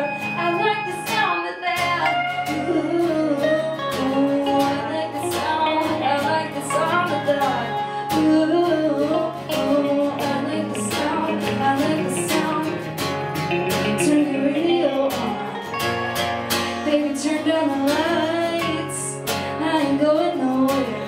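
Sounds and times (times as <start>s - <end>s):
acoustic guitar strumming: 0.0s - 21.0s
country-pop band playing: 0.0s - 21.0s
wavering melody line: 13.5s - 18.8s.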